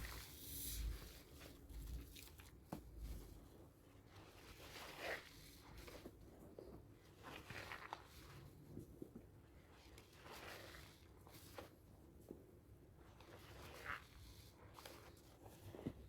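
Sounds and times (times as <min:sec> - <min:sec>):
soap lather squishing: 0:00.0 - 0:02.8, 0:03.9 - 0:06.1, 0:07.2 - 0:08.4, 0:09.5 - 0:11.7, 0:13.1 - 0:15.8.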